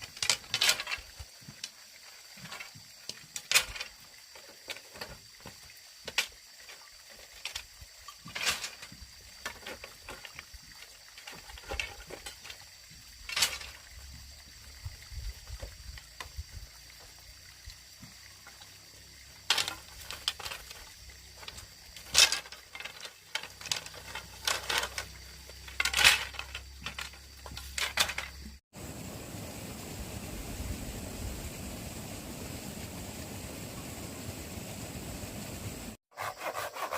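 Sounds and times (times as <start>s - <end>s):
small water splashes and trickles: 0.0s - 27.8s.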